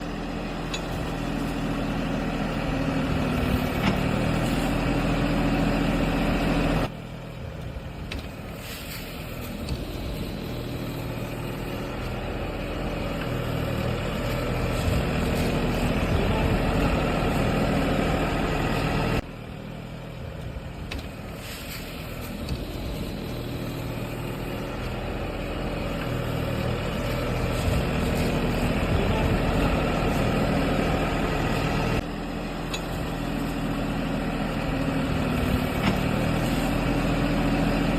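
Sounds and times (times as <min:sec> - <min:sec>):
excavator engine running: 0:00.0 - 0:37.9.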